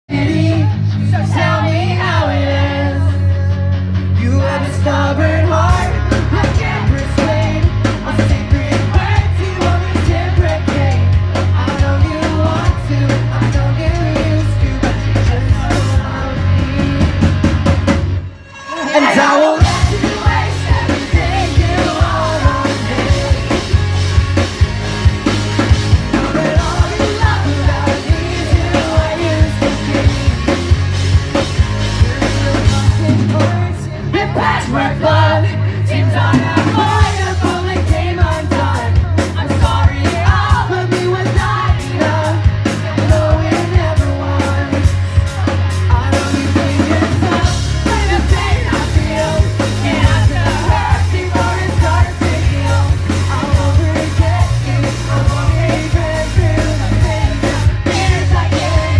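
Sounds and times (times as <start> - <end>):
bass guitar: 0.0 - 18.4, 19.6 - 58.9
drum kit: 5.5 - 58.9
person singing: 18.4 - 24.0, 25.6 - 58.9.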